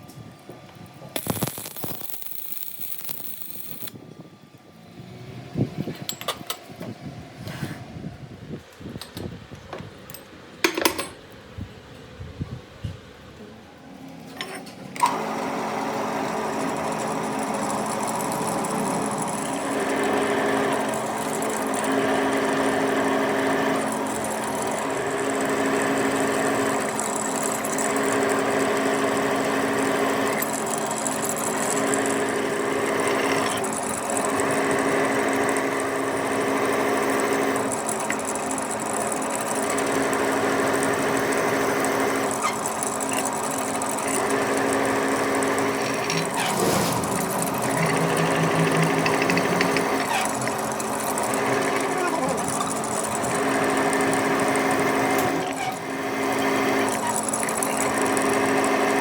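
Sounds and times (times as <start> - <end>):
machine tool humming: 1.2 - 4.0, 42.3 - 55.5.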